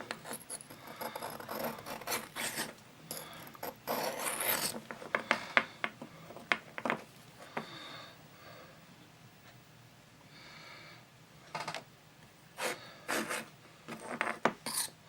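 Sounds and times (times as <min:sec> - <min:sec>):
knife blade scraping on whetstone: 0:00.3 - 0:04.8, 0:14.7 - 0:15.0.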